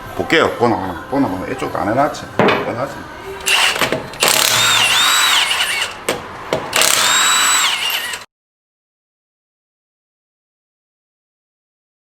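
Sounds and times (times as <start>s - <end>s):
impact wrench whining: 3.4s - 8.3s.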